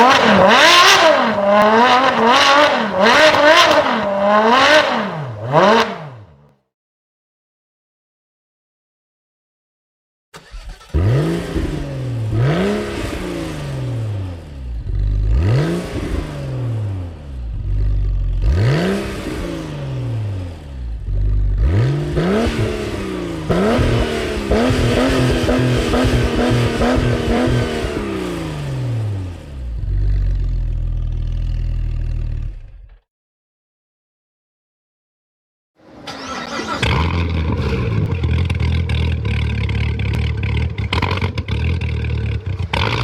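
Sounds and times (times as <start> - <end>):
sports car engine revving: 0.0 - 6.3, 10.4 - 33.0.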